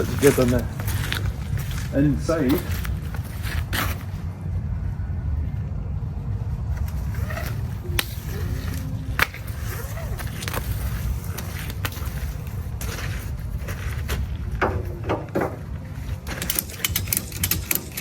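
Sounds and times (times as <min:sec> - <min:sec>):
steady low rumble: 0:00.0 - 0:18.0
metallic buckle clacks: 0:16.2 - 0:18.0.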